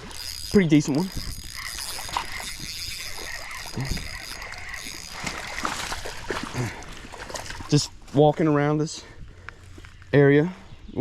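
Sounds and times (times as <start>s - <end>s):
fishing reel whirring and clicking: 0.0s - 7.9s
water splashing: 0.0s - 8.1s.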